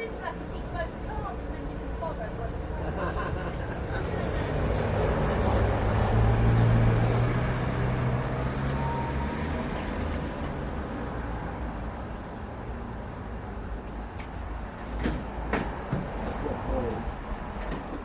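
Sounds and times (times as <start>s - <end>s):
vehicle engine hum passing by: 0.3s - 14.5s.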